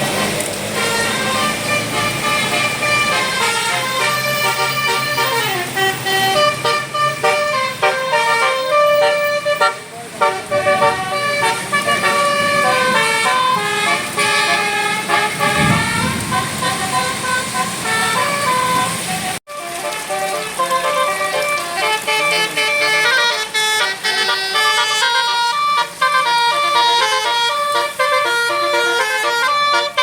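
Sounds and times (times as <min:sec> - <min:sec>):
bus musical horn melody: 0:00.0 - 0:30.0
low rumble: 0:15.3 - 0:17.9.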